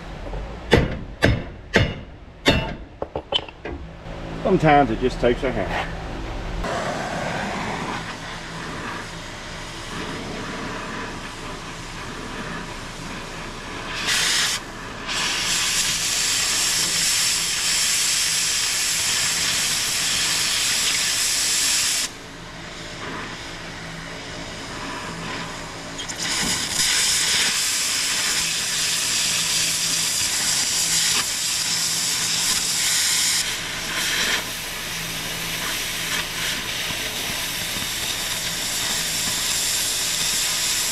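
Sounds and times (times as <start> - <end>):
loud hiss: 12.5 - 40.9.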